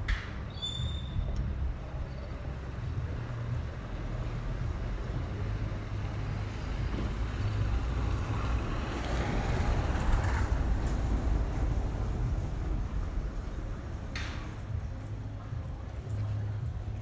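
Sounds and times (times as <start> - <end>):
low street rumble: 0.0 - 17.0
motor vehicle passing: 3.1 - 15.0.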